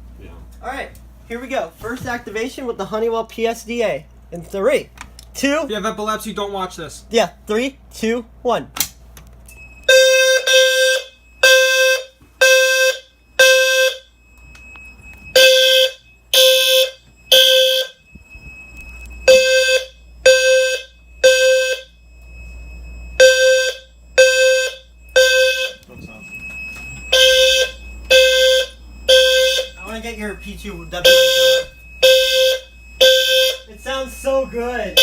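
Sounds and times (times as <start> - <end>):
fire alarm pulsing tone: 9.5 - 35.0
thin steady high beep: 9.5 - 35.0.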